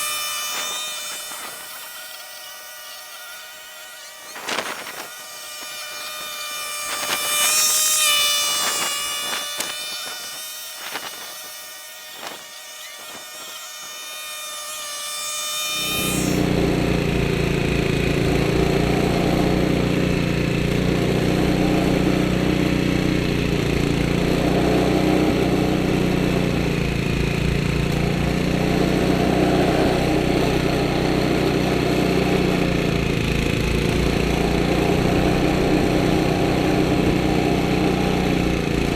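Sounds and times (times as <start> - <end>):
snowblower engine running: 0.0 - 11.0, 14.2 - 38.9
high buzzing whine: 0.0 - 24.6.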